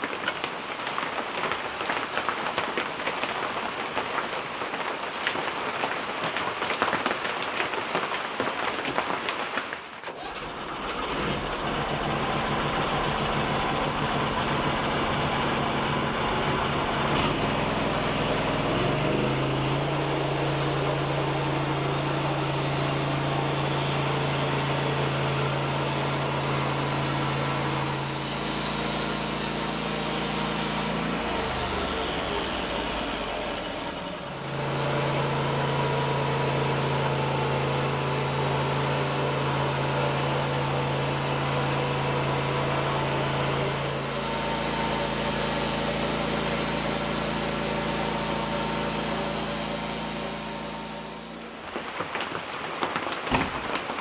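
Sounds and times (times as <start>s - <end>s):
small engine running: 10.0s - 52.2s.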